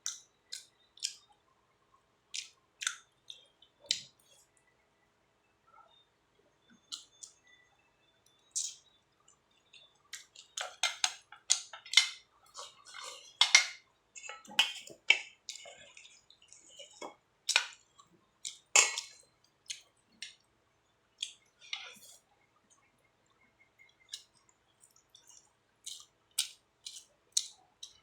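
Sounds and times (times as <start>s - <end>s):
chewing and sipping: 12.5s - 13.5s, 14.2s - 19.9s.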